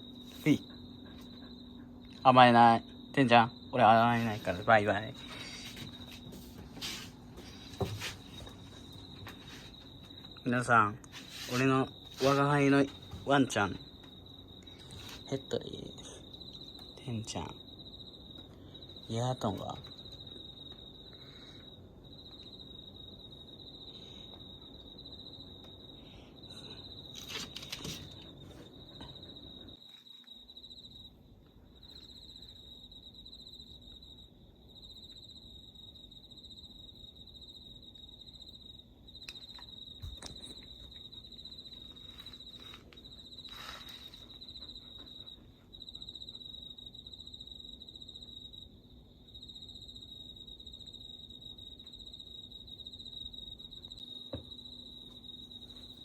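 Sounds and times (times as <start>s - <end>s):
crickets trilling: 0.0s - 56.0s
rustles and knocks: 5.3s - 10.0s.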